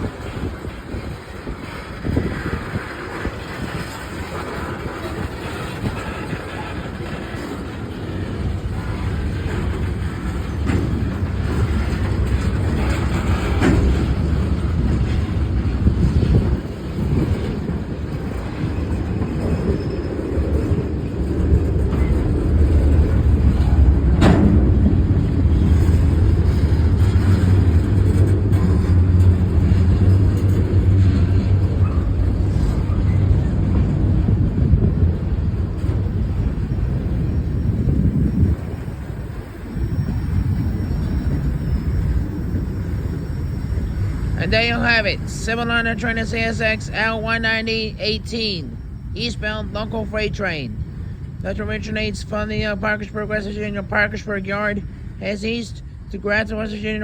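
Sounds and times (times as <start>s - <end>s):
wheels clunking over rail: 0.0s - 43.2s
freight train rumbling: 0.0s - 57.0s.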